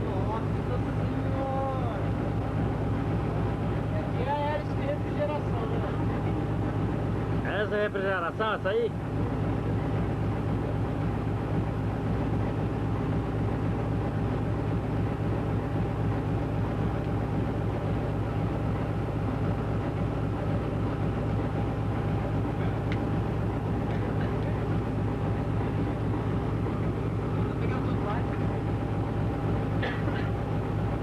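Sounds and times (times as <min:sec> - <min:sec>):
cooling fan whine: 0:00.0 - 0:31.0
diesel locomotive engine drone: 0:00.0 - 0:31.0.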